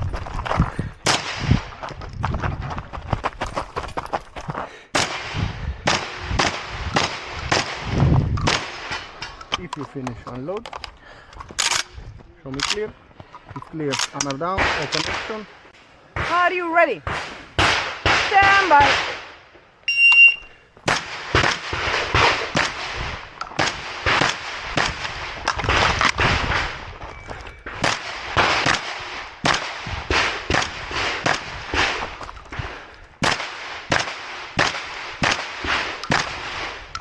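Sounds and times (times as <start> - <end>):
shotgun shots: 1.0 - 1.7, 4.9 - 9.2, 16.2 - 19.4, 20.8 - 26.8, 27.8 - 32.2, 33.2 - 36.9.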